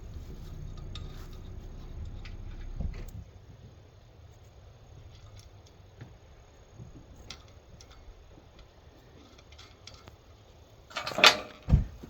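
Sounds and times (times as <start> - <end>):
low room hum: 0.0 - 10.1.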